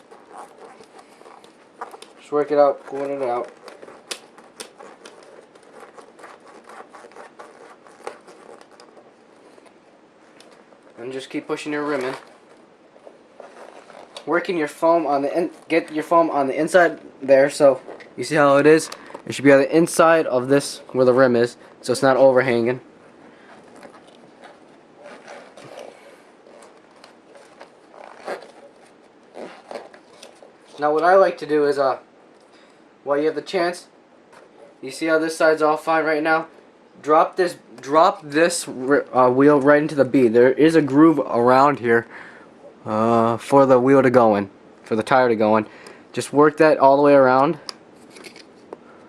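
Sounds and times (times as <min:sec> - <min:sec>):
rubber tire rubbing and crinkling: 0:00.0 - 0:21.1, 0:22.4 - 0:31.2.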